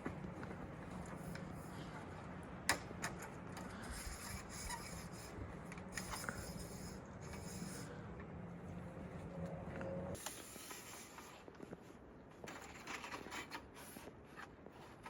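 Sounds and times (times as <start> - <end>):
light rubbing and scraping: 3.3 - 8.0.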